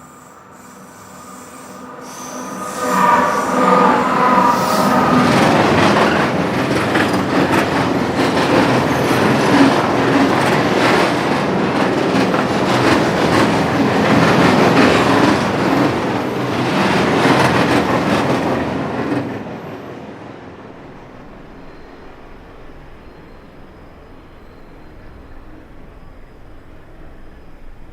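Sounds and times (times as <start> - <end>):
wheel squeal: 0.0 - 11.3, 21.3 - 27.9
train wheels clacking on rail: 0.0 - 20.0.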